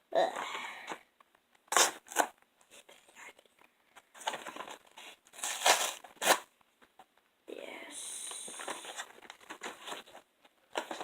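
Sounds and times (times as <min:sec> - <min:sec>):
packaging rustling: 0:04.2 - 0:06.5
packaging ripping: 0:05.3 - 0:06.5.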